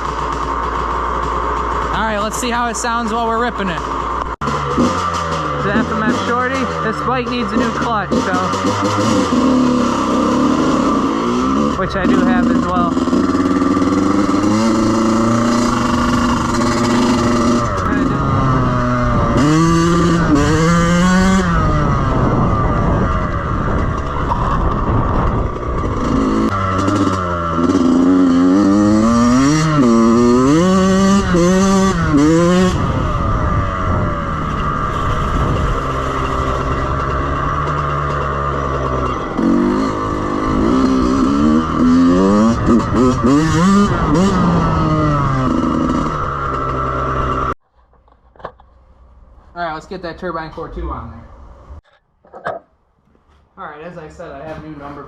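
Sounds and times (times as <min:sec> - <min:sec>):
two-stroke motorcycle engine revving: 0:00.0 - 0:47.6.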